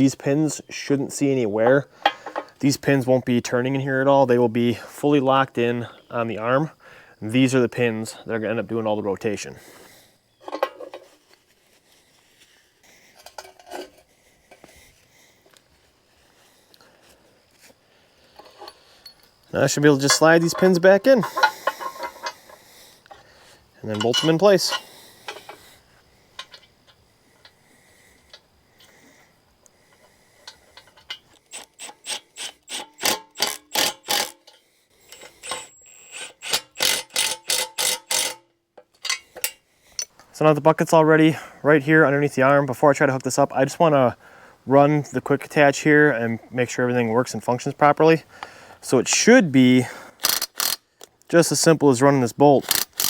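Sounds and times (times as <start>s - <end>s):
metal pins clinking: 18.4s - 22.5s, 23.8s - 25.6s.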